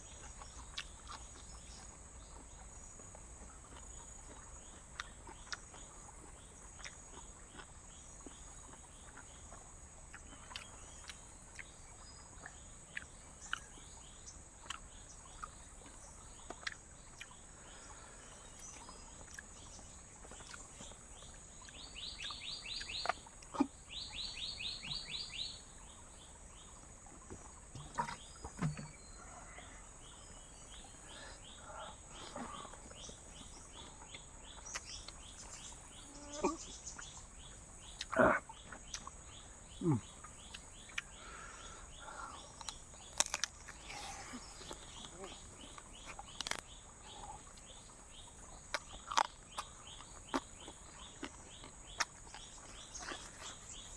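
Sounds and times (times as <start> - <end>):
rapid chirping trills: 14.6 - 26.0.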